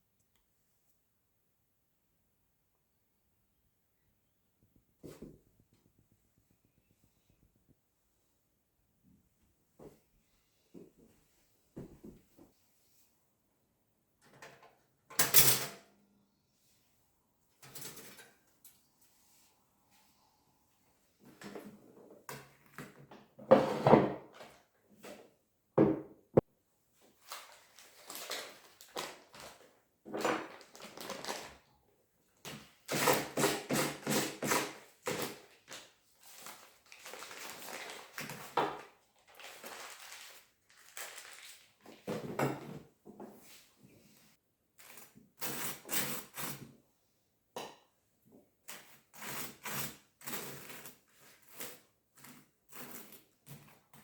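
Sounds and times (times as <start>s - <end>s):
objects knocking and clattering: 25.8s - 26.5s, 42.0s - 42.9s.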